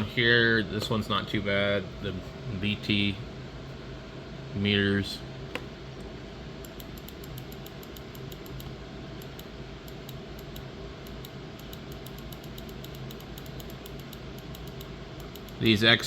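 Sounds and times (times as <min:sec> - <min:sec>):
steady low hum: 0:00.0 - 0:16.0
computer mouse clicking: 0:06.6 - 0:15.7.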